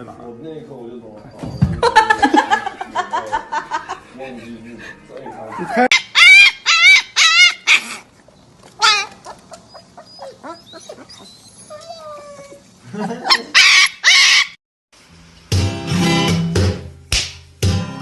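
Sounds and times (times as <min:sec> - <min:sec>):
puppy yelping: 0:05.3 - 0:12.6, 0:13.2 - 0:14.6.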